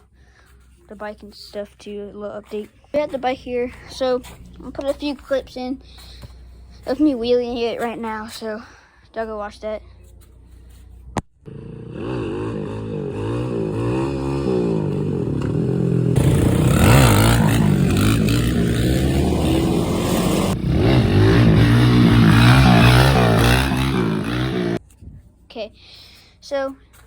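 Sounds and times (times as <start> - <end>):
dirt bike engine revving: 11.5 - 24.8.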